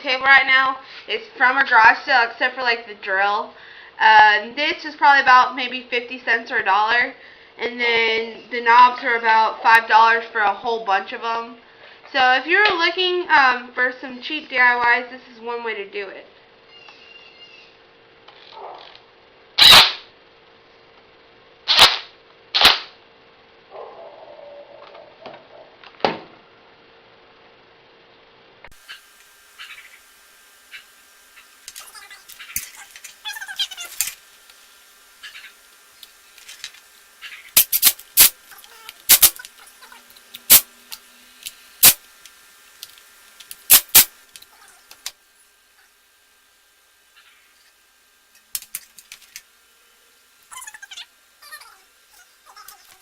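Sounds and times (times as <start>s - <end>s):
faint steady hum: 0.0s - 53.0s
sharp loud cracks: 19.6s - 20.1s, 21.7s - 23.0s, 43.7s - 44.1s
small hard parts clicking: 37.6s - 45.2s.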